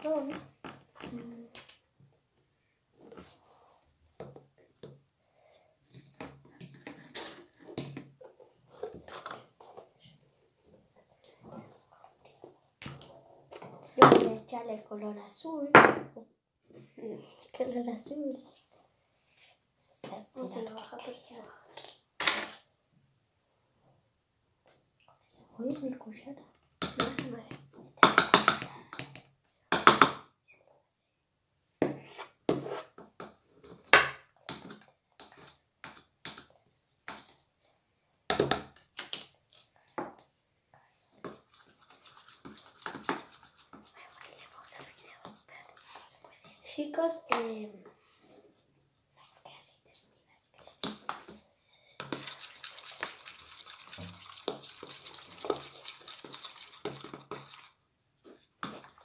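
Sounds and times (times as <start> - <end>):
spoon scraping plastic pot: 52.0 - 57.8.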